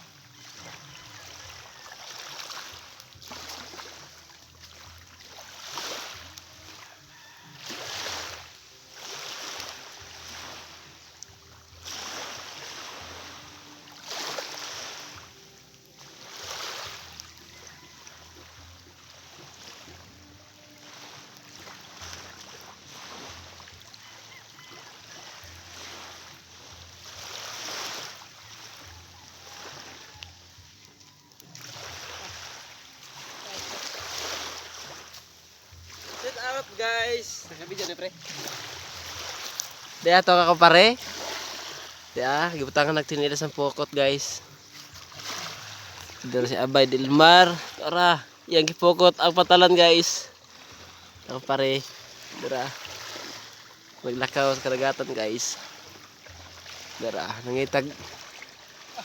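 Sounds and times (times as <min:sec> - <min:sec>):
waves washing and splashing: 0:00.0 - 0:59.0.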